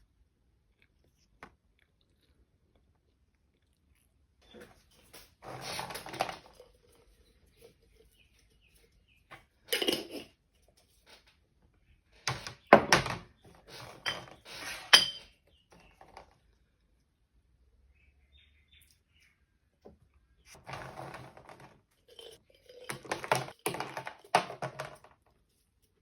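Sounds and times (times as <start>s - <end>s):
kitchenware clattering: 9.4s - 10.4s, 12.3s - 15.4s, 20.6s - 25.1s.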